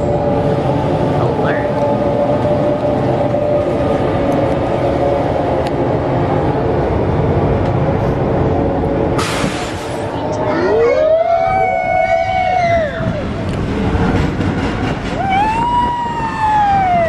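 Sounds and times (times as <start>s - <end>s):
roller coaster train rumbling: 0.0s - 17.0s
short hiss: 9.2s - 10.0s.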